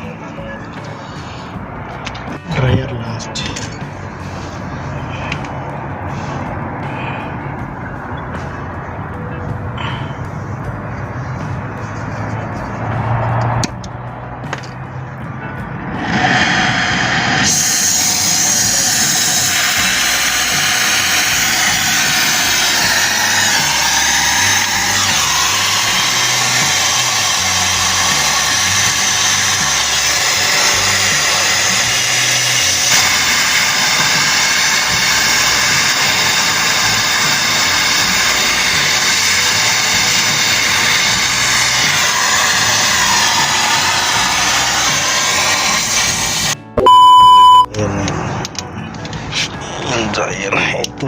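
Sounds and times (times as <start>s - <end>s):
ambient music with bass line: 0.0s - 51.0s
loud hiss: 15.9s - 46.6s.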